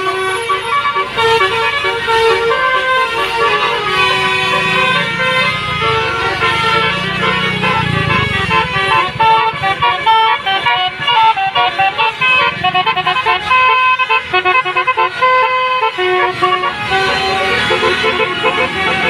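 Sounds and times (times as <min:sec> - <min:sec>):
musical bus horn tune: 0:00.0 - 0:19.0.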